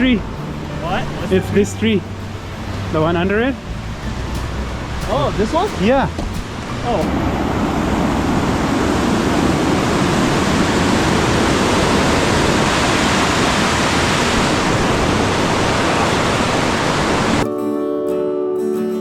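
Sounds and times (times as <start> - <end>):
strummed acoustic guitar music: 0.0 - 8.7, 14.0 - 19.0
flowing water rushing: 0.0 - 17.4.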